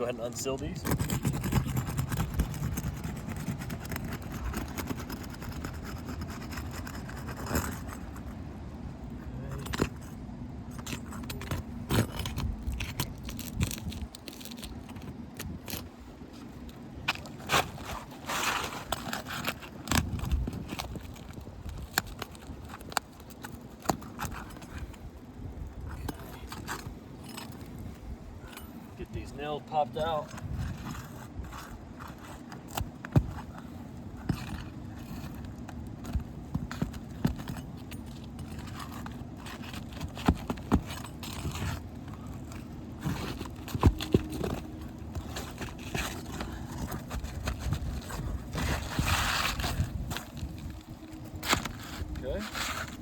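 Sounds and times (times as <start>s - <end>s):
metal tool scraping shingles: 0.6s - 8.4s, 17.1s - 24.9s, 28.4s - 53.0s.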